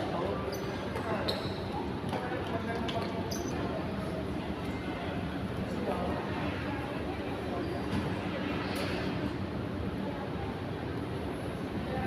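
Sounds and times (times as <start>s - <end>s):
busy indoor public space din: 0.0s - 12.0s
faint indistinct voices: 0.0s - 12.0s.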